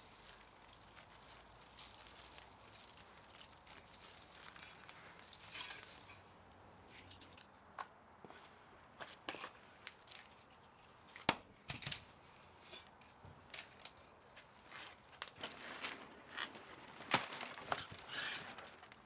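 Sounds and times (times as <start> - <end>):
scraping rustle: 0.0 - 7.4, 11.9 - 19.0
hand tools clicking and clinking: 0.1 - 6.4.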